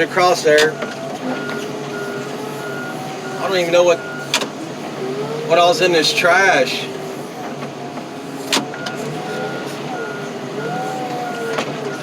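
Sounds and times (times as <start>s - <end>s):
diesel engine revving: 0.0s - 12.0s
alarm beeps: 0.7s - 4.4s, 8.7s - 12.0s.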